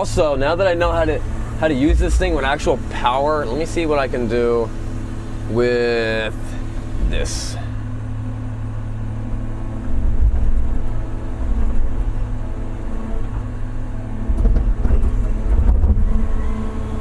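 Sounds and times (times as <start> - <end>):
excavator diesel engine droning: 0.0 - 17.0.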